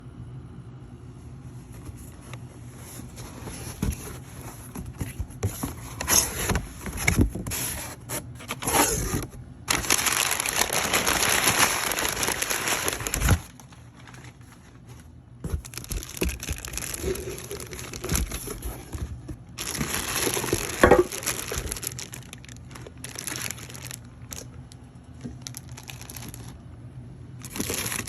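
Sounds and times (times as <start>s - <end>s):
rustling scrape: 1.5s - 22.2s
cardboard box being handled: 1.6s - 24.0s.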